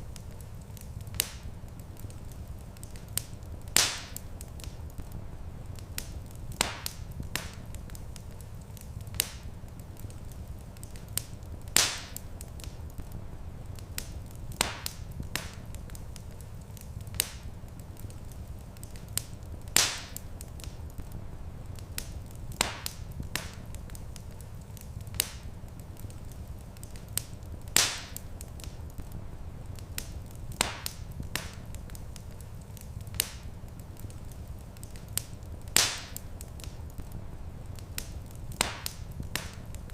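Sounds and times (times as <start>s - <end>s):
wood fire crackling and popping: 0.0s - 39.9s
steady low rumble: 3.3s - 8.4s.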